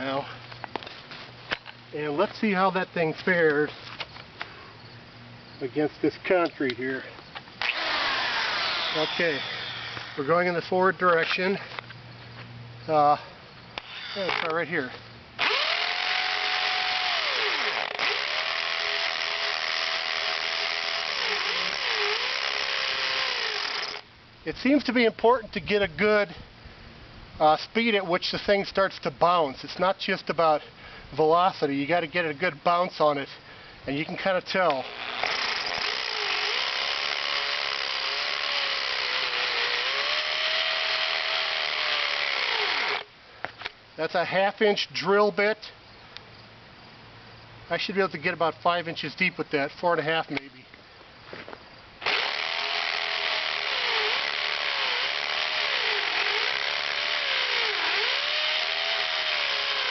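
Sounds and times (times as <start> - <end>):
hammer drill drilling into concrete: 7.6 - 10.2, 15.4 - 24.0, 34.8 - 43.1, 52.0 - 59.9.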